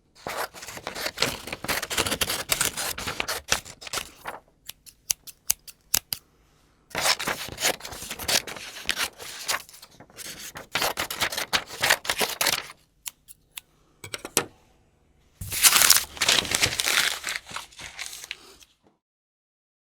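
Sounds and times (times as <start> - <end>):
scissors cutting: 0.4 - 6.2, 7.0 - 13.6.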